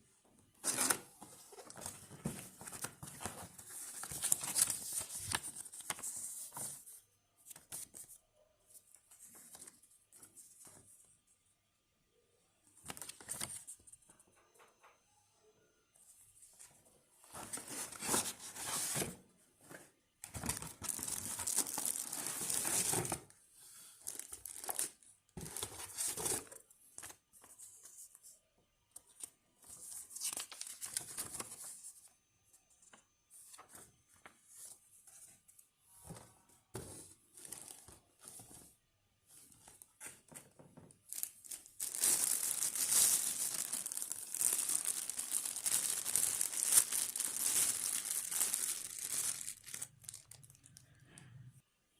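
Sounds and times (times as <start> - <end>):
plastic and paper crinkling: 0.6 - 6.9, 17.3 - 23.3, 24.0 - 27.8, 29.7 - 31.8, 39.5 - 50.8.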